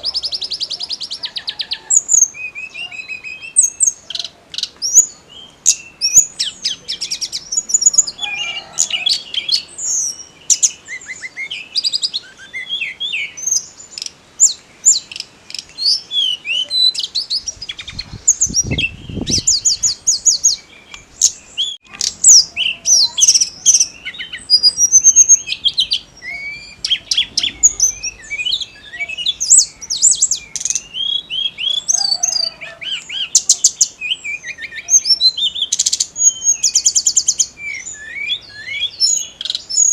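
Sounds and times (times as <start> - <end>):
bird singing chirps and trills: 0.0 - 39.9
low rumble: 26.0 - 30.5.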